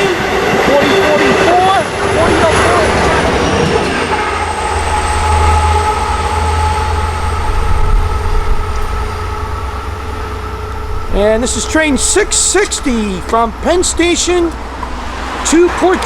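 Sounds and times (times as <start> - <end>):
train wheels rumbling on rails: 0.0 - 16.0
thin steady whines: 0.7 - 16.0.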